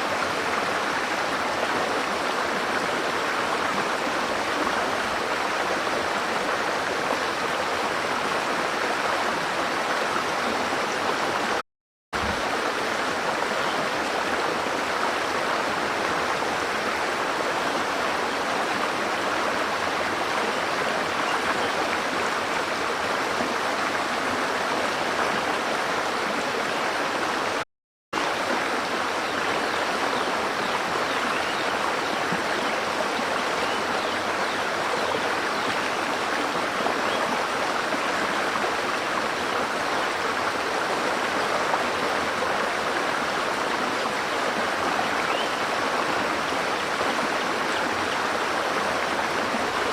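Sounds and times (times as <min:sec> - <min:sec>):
water rushing: 0:00.0 - 0:11.6, 0:12.2 - 0:27.6, 0:28.2 - 0:49.9.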